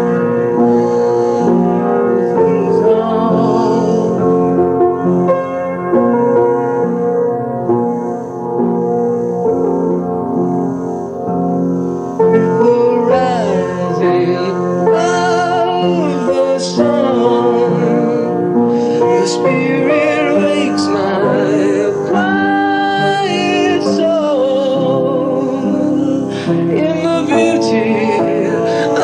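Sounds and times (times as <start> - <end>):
steady musical accompaniment: 0.0 - 29.0
solo voice singing with vibrato: 2.0 - 4.5, 12.4 - 29.0.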